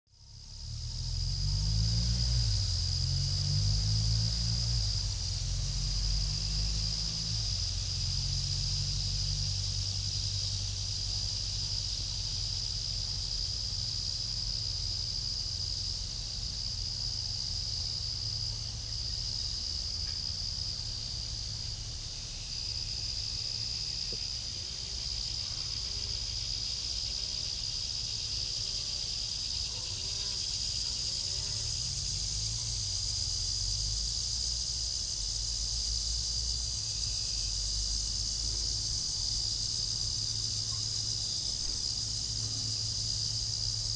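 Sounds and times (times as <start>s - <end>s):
insects buzzing trill: 0.2s - 43.9s.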